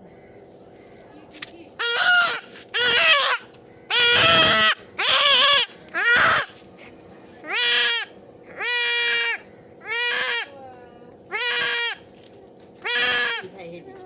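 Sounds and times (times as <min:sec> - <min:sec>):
goat kid bleating: 0:11.3 - 0:12.0.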